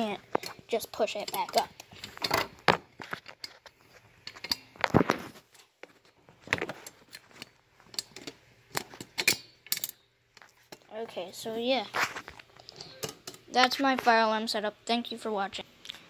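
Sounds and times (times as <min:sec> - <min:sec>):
light clicks and metallic rattles: 0:06.6 - 0:10.0.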